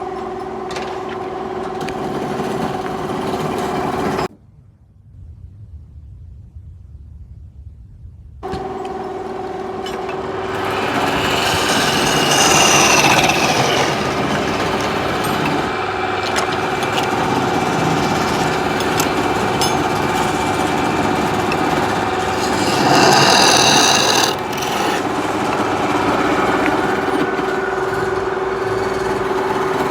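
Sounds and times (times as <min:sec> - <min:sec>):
wood lathe motor hum: 0:09.6 - 0:29.9
turning tool rasping on wood: 0:10.4 - 0:15.8, 0:16.6 - 0:28.0.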